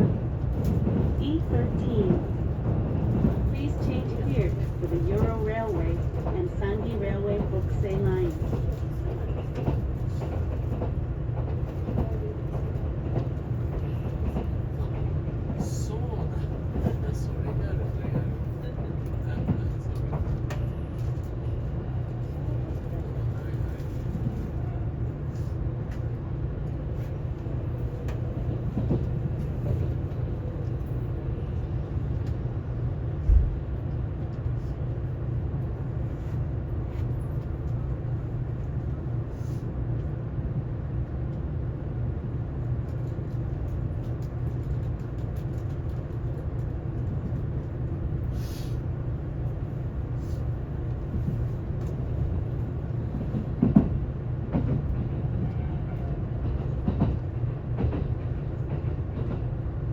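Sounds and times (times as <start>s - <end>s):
train cabin rumble: 0.0s - 59.9s
train thump: 33.2s - 33.6s, 53.1s - 55.0s.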